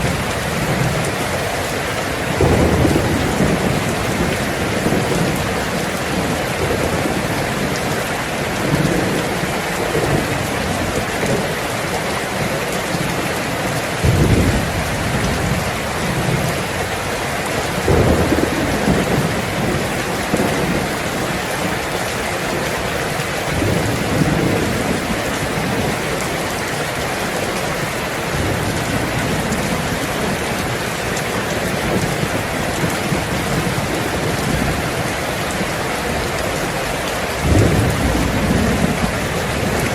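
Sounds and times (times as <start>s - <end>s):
thunder rumbling: 0.0s - 35.6s, 37.4s - 39.9s
heavy rain on a tin roof: 0.0s - 39.9s.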